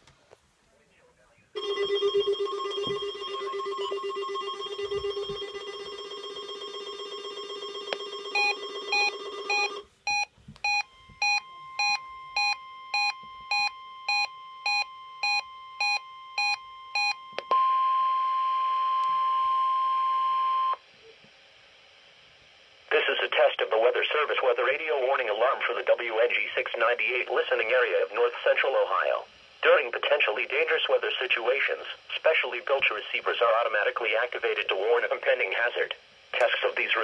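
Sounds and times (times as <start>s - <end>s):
steady warning alarm tone: 1.6s - 17.8s.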